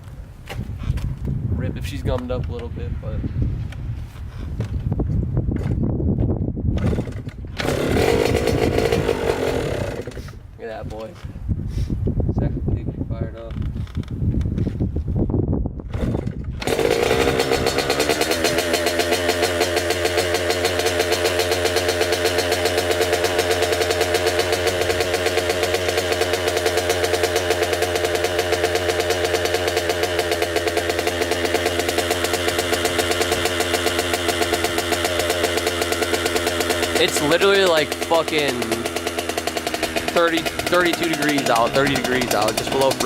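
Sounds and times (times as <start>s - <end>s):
two-stroke engine idling: 6.8s - 10.4s, 16.0s - 43.0s.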